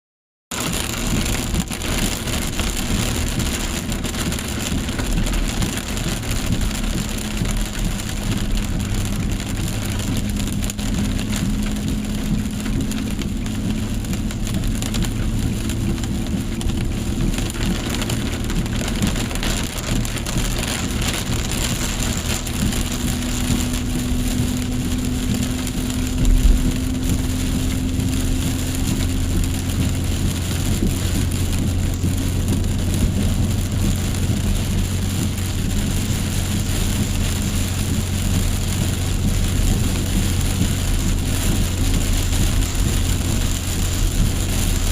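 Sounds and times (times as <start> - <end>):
car engine humming: 0.5 - 44.9
heavy rain pattering: 0.5 - 44.9
low thump: 26.2 - 27.0.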